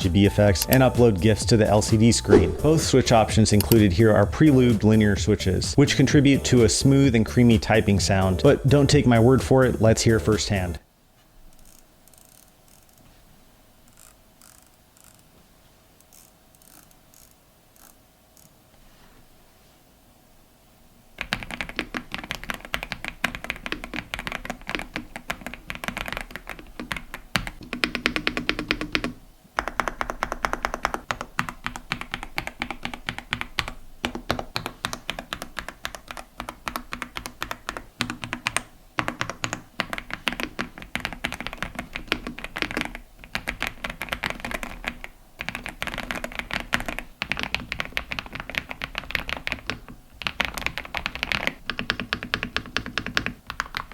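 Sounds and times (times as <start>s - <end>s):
mechanical keyboard typing: 21.2s - 53.9s.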